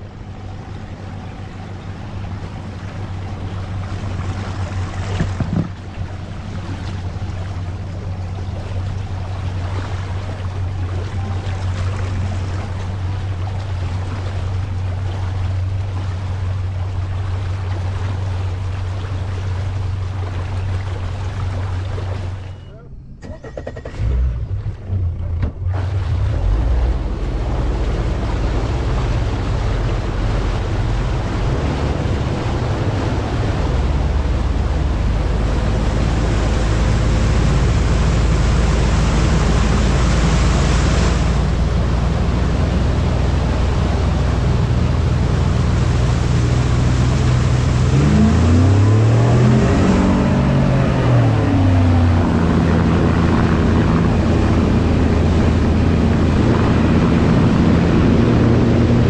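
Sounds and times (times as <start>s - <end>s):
wind noise on microphone: 4.2s - 6.1s, 25.7s - 59.0s
vehicle passing by: 25.7s - 59.0s.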